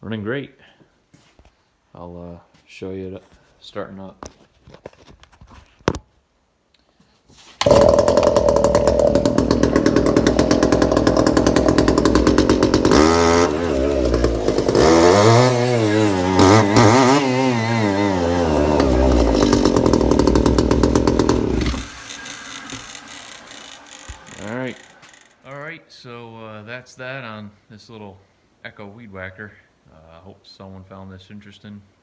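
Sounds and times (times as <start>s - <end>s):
brush cutter engine revving: 7.6s - 25.6s.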